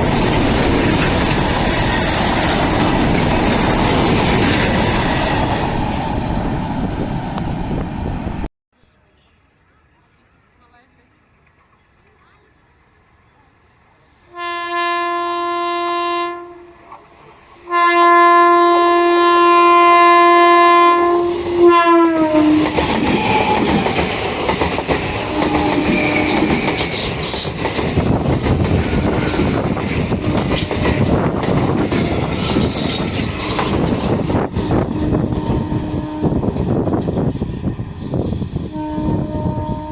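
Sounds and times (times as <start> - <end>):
train wheel clatter: 0.0 - 8.0, 22.3 - 38.7
train horn: 14.2 - 17.0, 17.6 - 24.0, 25.1 - 26.8, 34.6 - 37.2, 38.6 - 39.9.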